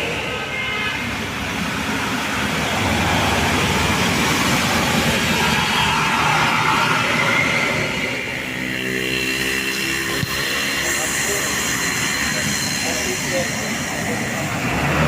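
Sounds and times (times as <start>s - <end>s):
bus passing close by: 1.1s - 15.0s.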